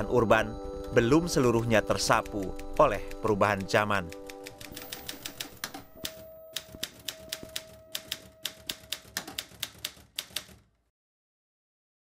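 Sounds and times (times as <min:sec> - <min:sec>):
manual typewriter typing: 0:01.3 - 0:10.8.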